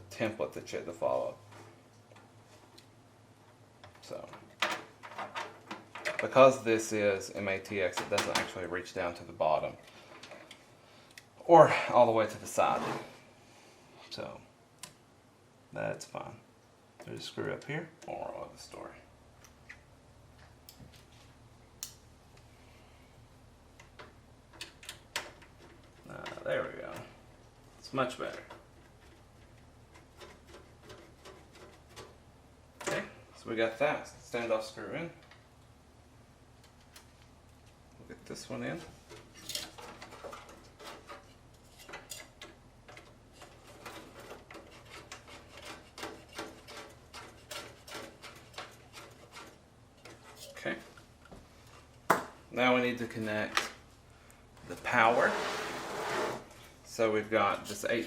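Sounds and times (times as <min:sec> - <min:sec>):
screwdriver clicking and scraping: 0:39.1 - 0:50.6.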